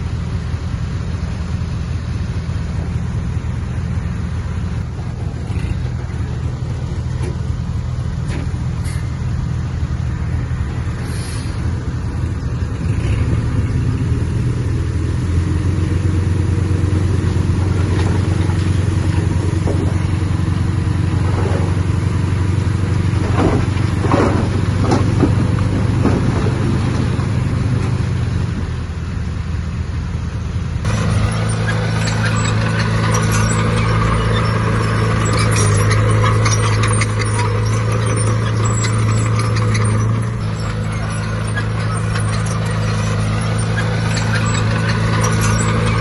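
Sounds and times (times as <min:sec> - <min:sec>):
heavy diesel machinery running: 0:00.0 - 0:46.0
metallic clatter: 0:17.1 - 0:28.2, 0:30.8 - 0:46.0.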